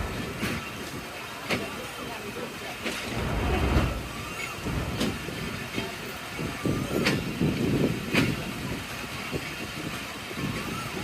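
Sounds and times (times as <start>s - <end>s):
train rumble and clatter: 0.0s - 10.7s.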